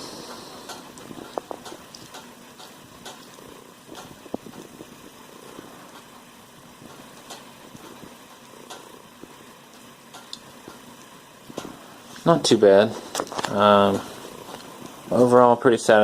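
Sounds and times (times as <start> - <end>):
fan blades whirring down: 0.0 - 16.0
faint ticks: 0.2 - 5.2, 5.9 - 11.8.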